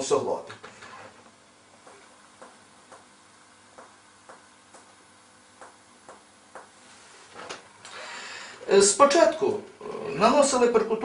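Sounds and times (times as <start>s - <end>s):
soft finger taps on body: 5.6s - 6.8s.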